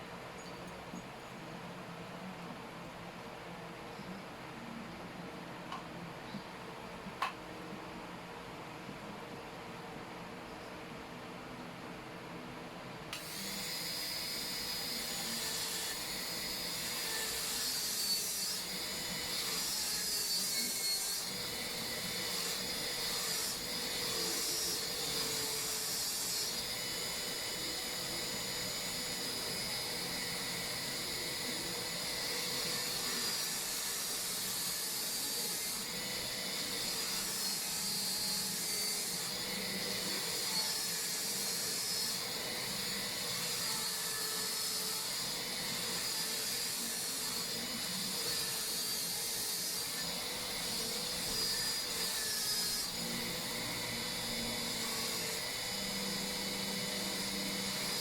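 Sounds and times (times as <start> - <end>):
dental drill whining: 13.2 - 58.0.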